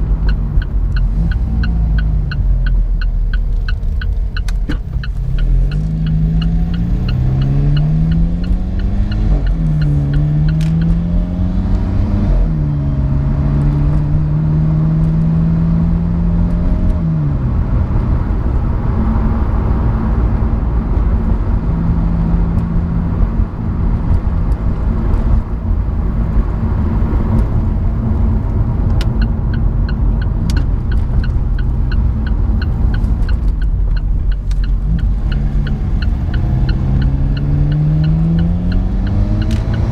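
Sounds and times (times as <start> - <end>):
even ticking: 0.0 - 11.0, 28.8 - 39.9
car engine accelerating through gears: 0.0 - 39.9
road noise: 0.0 - 39.9.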